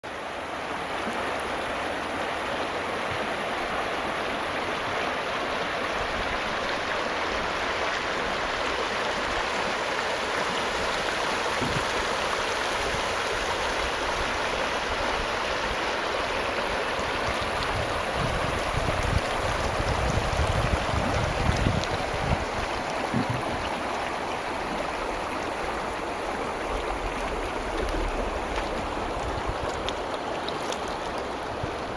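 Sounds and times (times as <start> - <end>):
river water rushing: 0.0 - 31.9
low thumps: 23.1 - 23.7.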